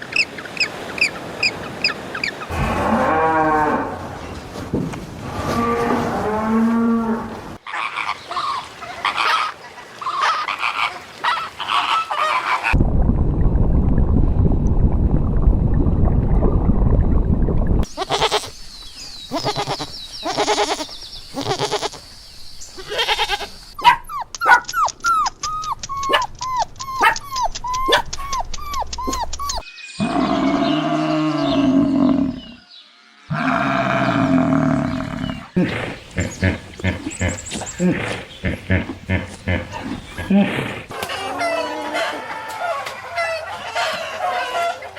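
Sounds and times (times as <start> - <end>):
low rushing noise: 2.5 - 4.5.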